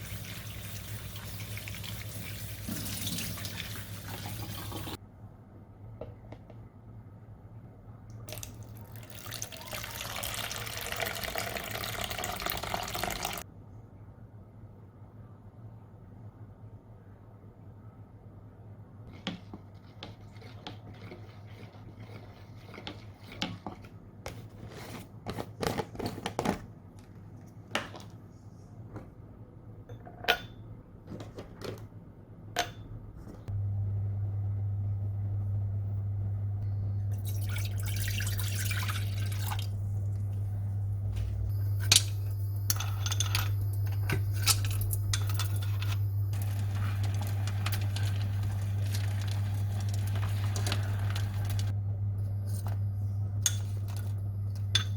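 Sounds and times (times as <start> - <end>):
steady low hum: 31.9 - 54.9
hissing crackling sizzle: 46.2 - 51.7.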